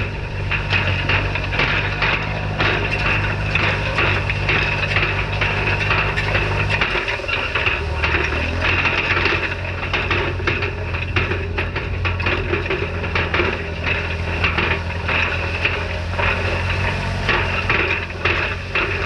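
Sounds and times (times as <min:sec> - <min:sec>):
hay rake clicking and knocking: 0:00.0 - 0:19.0
tractor engine running: 0:00.0 - 0:19.0.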